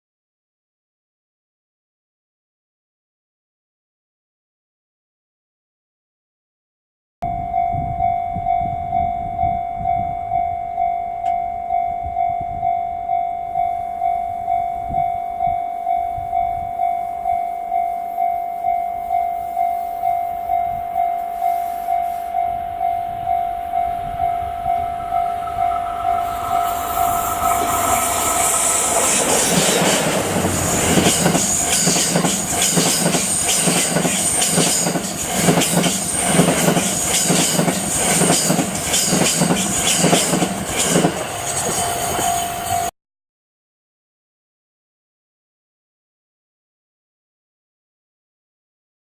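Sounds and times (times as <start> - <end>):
level crossing warning bell: 7.2 - 33.4
electric locomotive and train passing: 7.3 - 42.9.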